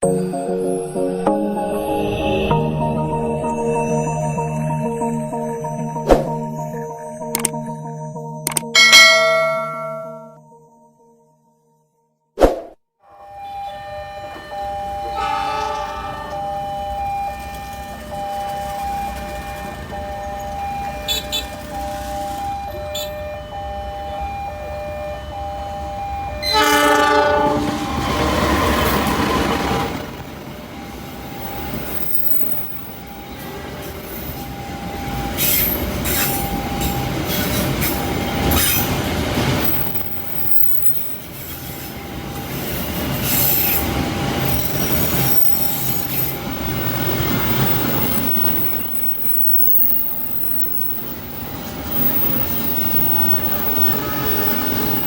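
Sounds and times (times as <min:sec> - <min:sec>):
steady warning tone: 0:00.0 - 0:10.5, 0:13.1 - 0:55.0
train horn blast: 0:13.1 - 0:19.2, 0:26.0 - 0:29.8, 0:53.7 - 0:55.0
passing train rumble: 0:13.2 - 0:55.0
wheel clatter and squeal: 0:13.6 - 0:23.3, 0:27.2 - 0:55.0.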